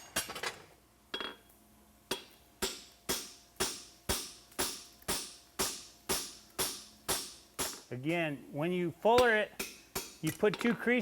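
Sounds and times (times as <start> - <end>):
hammer striking tool on horseshoe: 2.1 - 7.9, 9.2 - 10.6.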